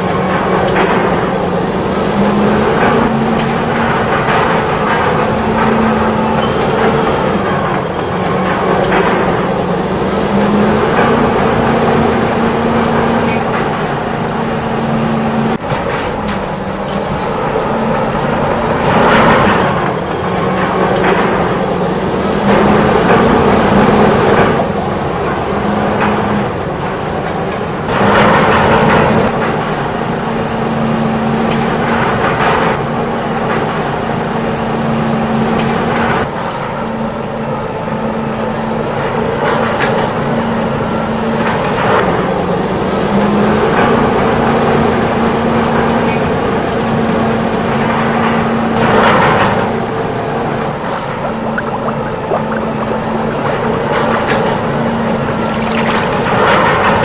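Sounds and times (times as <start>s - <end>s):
noisy bursts: 49.4s - 57.0s.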